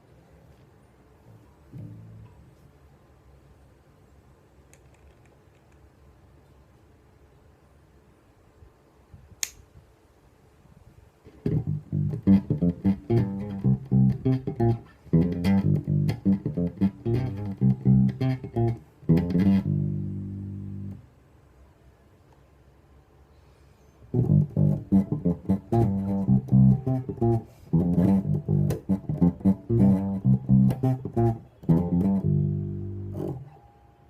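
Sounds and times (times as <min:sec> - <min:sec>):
electric bass plucked notes: 0:01.7 - 0:02.4, 0:11.4 - 0:21.0, 0:24.1 - 0:33.6
sharp click: 0:09.4 - 0:09.7.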